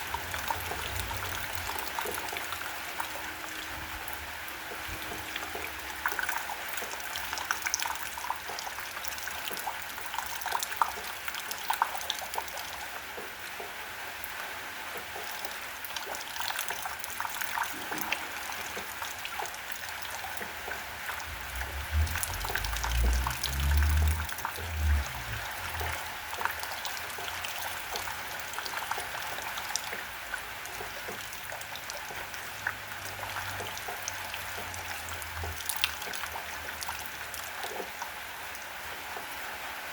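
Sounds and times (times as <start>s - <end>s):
steady rain falling: 0.0s - 39.9s
low rumble: 21.2s - 26.1s.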